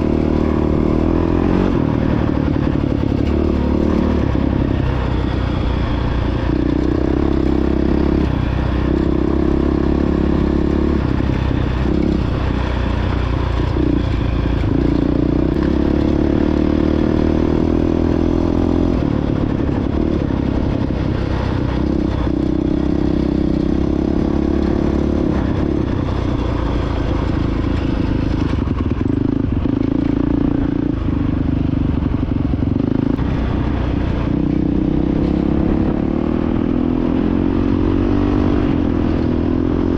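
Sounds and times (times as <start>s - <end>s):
dirt bike engine revving: 0.0s - 20.7s.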